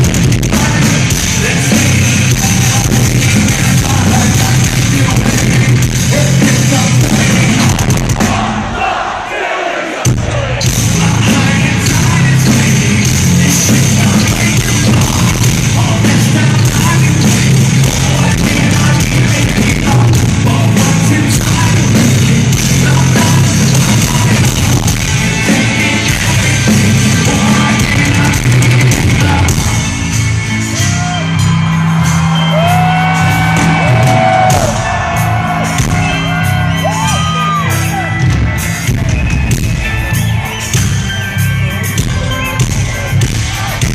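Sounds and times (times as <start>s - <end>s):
person singing: 0.0s - 8.5s, 10.4s - 31.4s
distorted live metal band: 0.0s - 9.3s, 9.9s - 43.9s.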